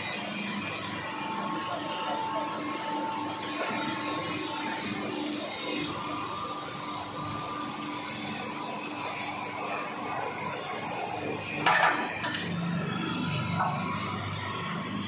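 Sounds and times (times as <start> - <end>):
workshop machinery whirring: 0.0 - 15.0.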